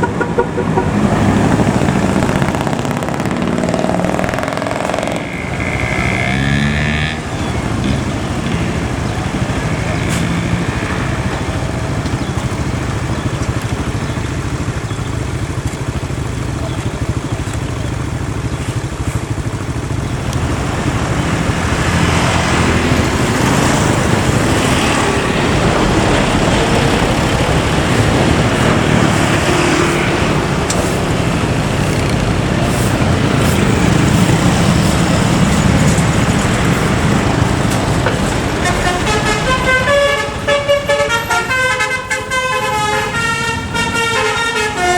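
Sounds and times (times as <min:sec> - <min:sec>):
musical bus horn playing a tune: 0:00.0 - 0:01.1, 0:38.5 - 0:44.9
bus engine and road noise: 0:00.0 - 0:44.9.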